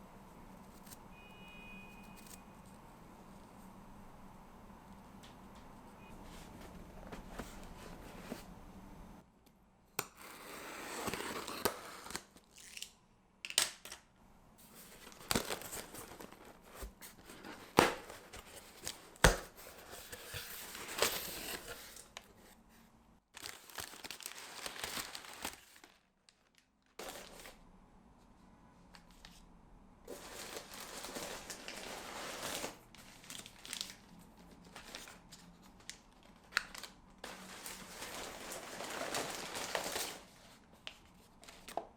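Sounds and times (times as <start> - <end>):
packaging tearing and crinkling: 10.4 - 13.9, 23.4 - 27.6, 30.1 - 40.4.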